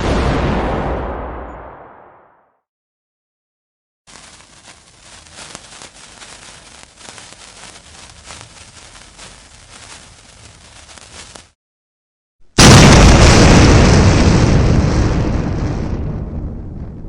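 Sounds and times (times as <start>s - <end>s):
fuse fizzing and crackling: 4.1s - 11.6s.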